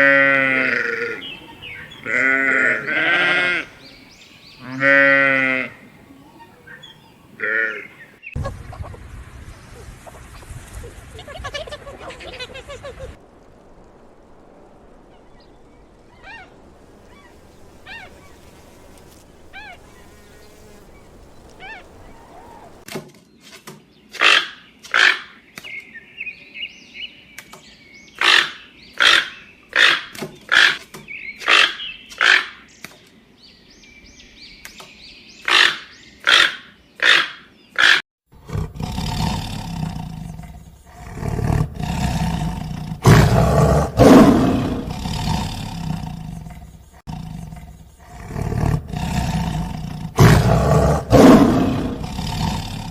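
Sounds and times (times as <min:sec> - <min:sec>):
loud harsh animal calls: 0:00.0 - 0:08.2, 0:35.4 - 0:52.9
deep roar: 0:38.4 - 0:52.9.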